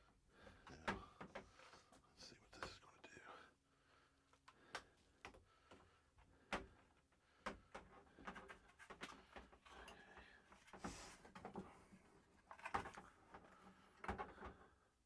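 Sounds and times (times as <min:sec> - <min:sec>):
plastic parts clicking and knocking: 0:12.5 - 0:14.6.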